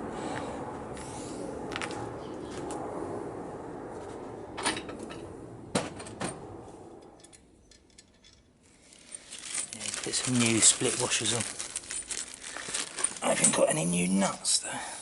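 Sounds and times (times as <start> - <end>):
small metal parts clinking: 7.2 - 13.5.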